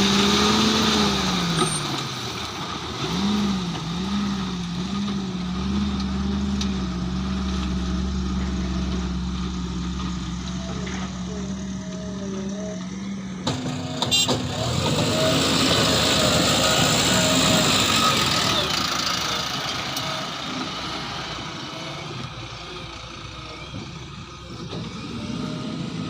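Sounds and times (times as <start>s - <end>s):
diesel engine working under load: 0.0s - 26.0s
short engine clatter: 1.3s - 21.4s.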